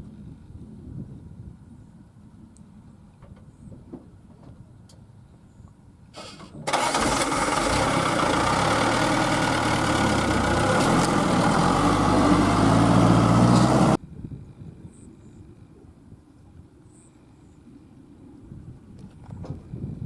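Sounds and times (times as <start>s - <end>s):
heavy diesel engine running: 6.2s - 14.0s.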